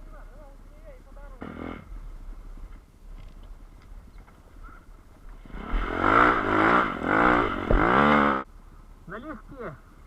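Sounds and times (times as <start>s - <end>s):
motorcycle engine revving hard: 5.4s - 8.4s.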